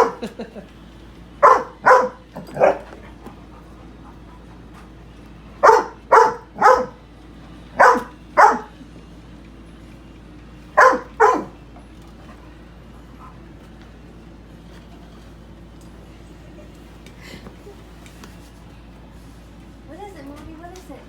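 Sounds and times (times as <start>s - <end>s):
dog barking: 0.0s - 0.3s, 1.4s - 2.9s, 5.6s - 7.0s, 7.8s - 8.7s, 10.8s - 11.6s.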